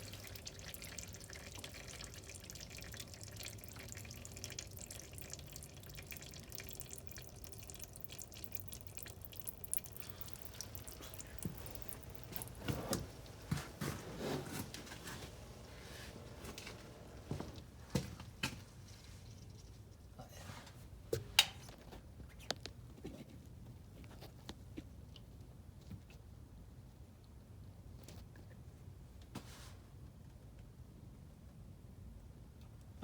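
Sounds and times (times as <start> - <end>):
oil trickling and dripping: 0.0 - 20.1.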